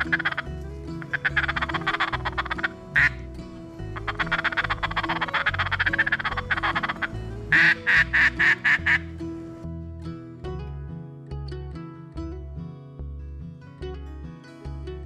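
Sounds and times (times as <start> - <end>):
ducks chattering and quacking: 0.0 - 9.2
background music with low notes: 0.0 - 15.0.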